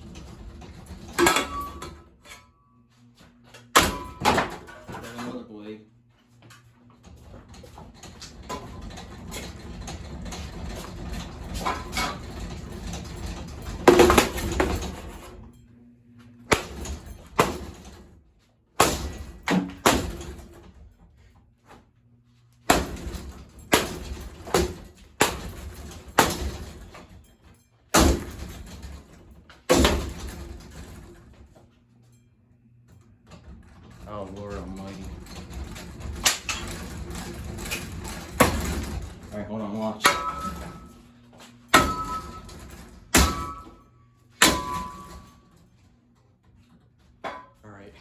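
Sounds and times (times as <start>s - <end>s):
faint low motor hum: 0.0s - 48.0s
fan parts rattling and clattering: 0.0s - 48.0s
whacks and crashes of breaking parts: 1.0s - 2.0s, 3.7s - 5.3s, 13.8s - 15.2s, 16.5s - 17.8s, 18.8s - 20.5s, 22.7s - 27.0s, 27.9s - 28.7s, 29.7s - 30.5s, 40.0s - 41.0s, 41.7s - 45.4s.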